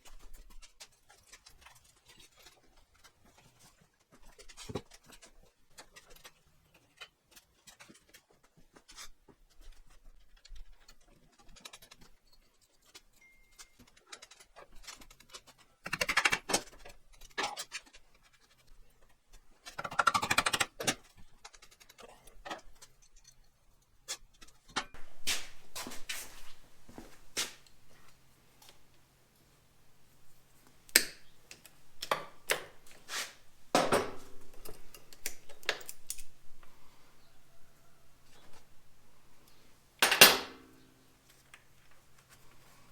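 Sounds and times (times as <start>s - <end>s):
tools clicking and clinking on metal: 0.1s - 25.0s, 33.8s - 36.6s, 40.0s - 42.3s.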